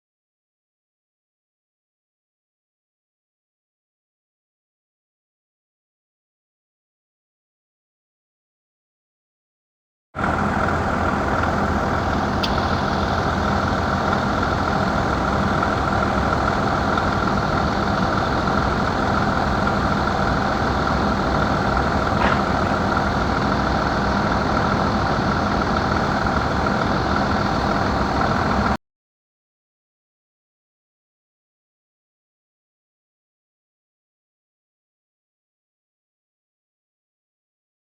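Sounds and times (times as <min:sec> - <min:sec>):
boat engine running: 0:10.2 - 0:28.8.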